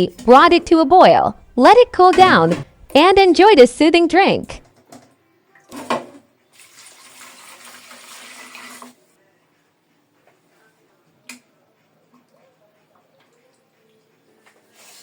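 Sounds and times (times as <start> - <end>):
water running and splashing: 6.6 - 9.0.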